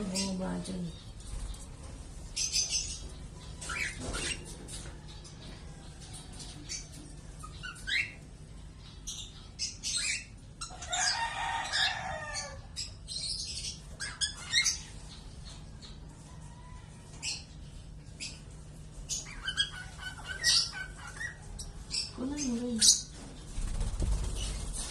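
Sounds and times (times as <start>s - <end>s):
birds chirping and squawking: 0.0s - 24.9s
rooster crowing: 10.8s - 12.8s, 16.3s - 17.2s.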